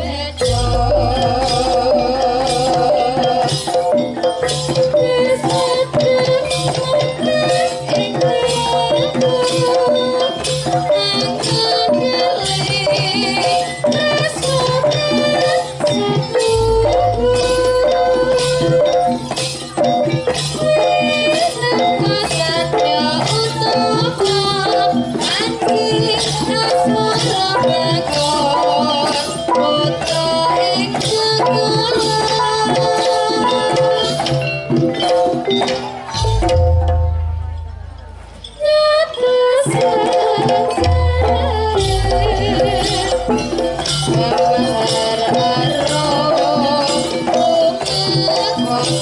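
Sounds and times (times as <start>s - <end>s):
held-note melody: 0.0s - 5.4s
band holding melodic notes: 0.0s - 49.0s
hand drum rhythm: 0.0s - 49.0s
rattling percussion: 0.0s - 49.0s.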